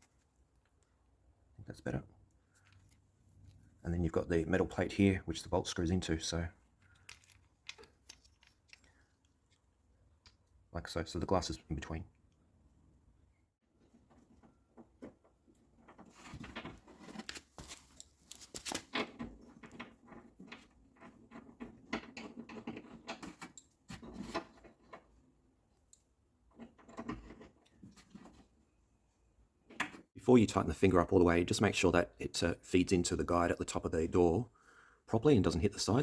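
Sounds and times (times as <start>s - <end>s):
plastic and metal parts rattling: 6.8s - 9.6s.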